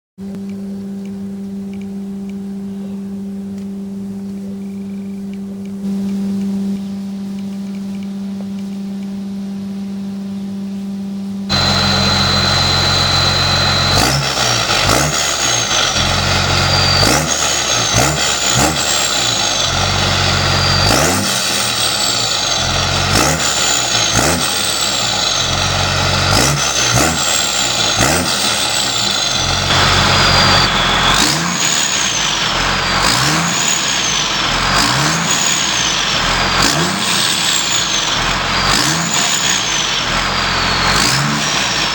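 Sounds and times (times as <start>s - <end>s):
tractor engine revving: 11.5s - 41.9s
turbo whistle: 11.5s - 41.9s.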